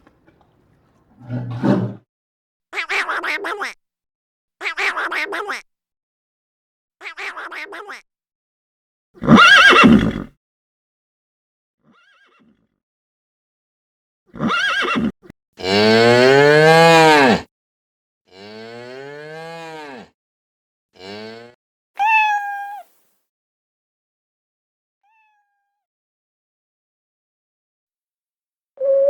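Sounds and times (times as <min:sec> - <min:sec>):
cattle mooing: 0:01.2 - 0:02.0.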